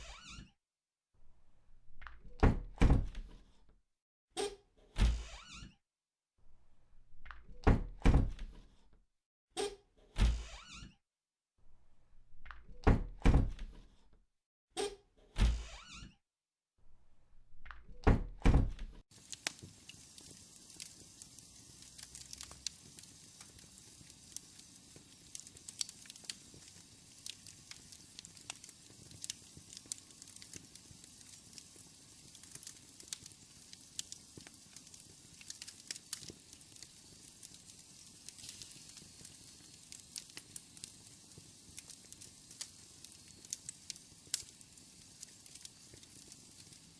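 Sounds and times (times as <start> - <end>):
sharp clicks and pops: 18.7 - 37.6
faint steady crackle: 19.1 - 46.9.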